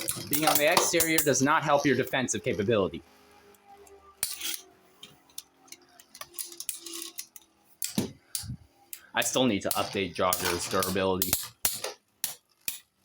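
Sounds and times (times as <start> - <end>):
spinning tops clacking: 0.0 - 1.5, 9.7 - 12.8.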